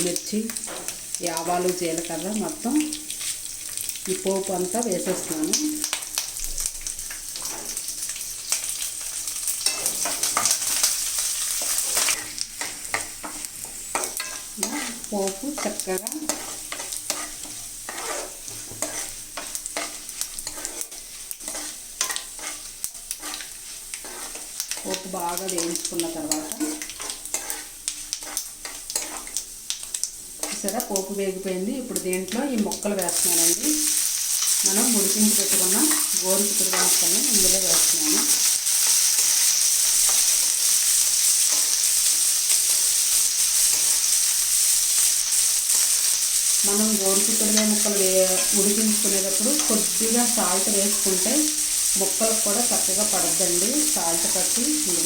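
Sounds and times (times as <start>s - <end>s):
spices sizzling in hot oil: 0.0s - 55.0s
spatula clicking and scraping: 11.6s - 25.0s, 26.3s - 29.5s.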